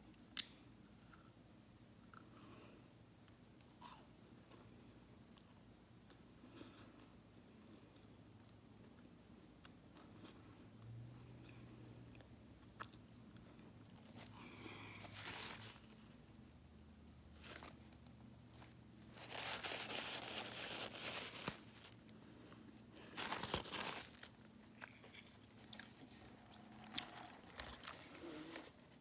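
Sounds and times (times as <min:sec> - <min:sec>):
crunching food: 0:17.4 - 0:29.0
chewing food: 0:24.3 - 0:29.0.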